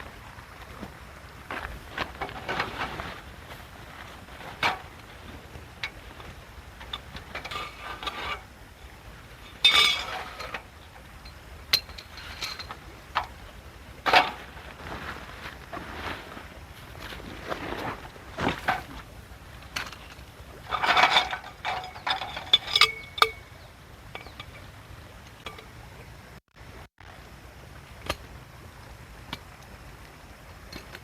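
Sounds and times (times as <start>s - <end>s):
camp gear clinks and knocks: 0.4s - 8.8s, 9.4s - 24.7s.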